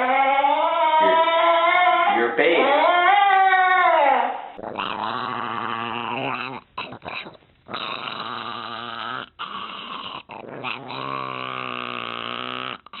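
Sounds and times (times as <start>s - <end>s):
dog growling: 4.5s - 13.0s.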